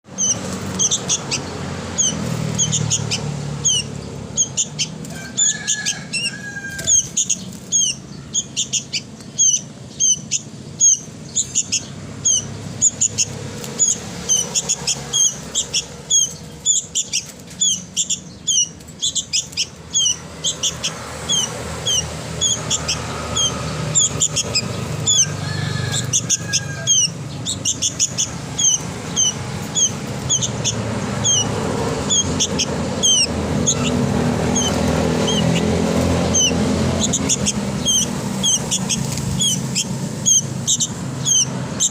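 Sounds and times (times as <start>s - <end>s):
bird chick cheeping: 0.1s - 41.9s.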